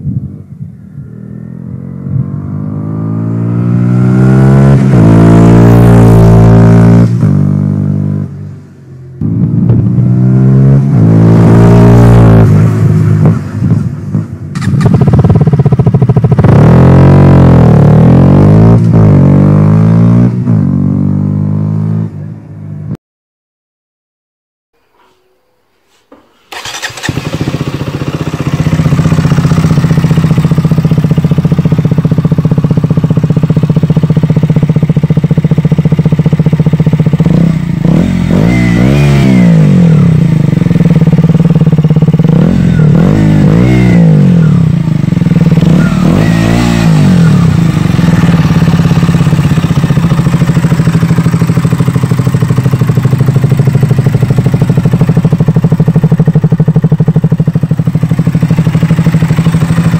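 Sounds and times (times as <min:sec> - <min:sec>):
motorcycle engine revving: 0:00.0 - 0:22.9, 0:26.5 - 0:59.9
motorcycle engine starting: 0:00.3 - 0:21.6, 0:26.1 - 0:59.9
motorcycle engine idling: 0:12.7 - 0:16.6, 0:26.5 - 0:38.3, 0:39.6 - 0:59.9.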